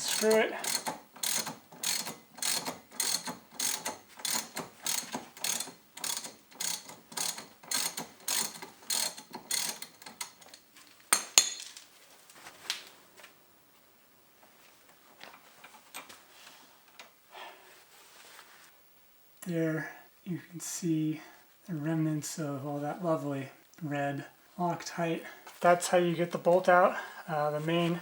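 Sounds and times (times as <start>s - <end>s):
socket ratchet clicking: 0.0s - 10.6s.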